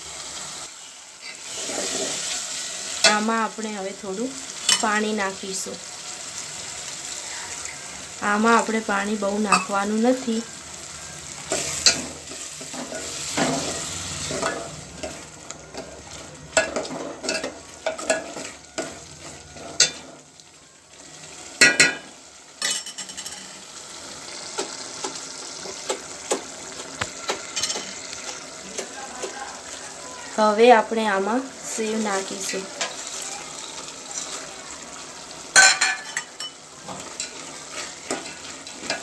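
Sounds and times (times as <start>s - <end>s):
masala sizzling in oil: 0.0s - 39.0s
spoon scraping and knocking pan: 7.7s - 10.6s, 11.4s - 20.2s, 21.5s - 23.6s, 24.3s - 30.3s, 35.5s - 39.0s.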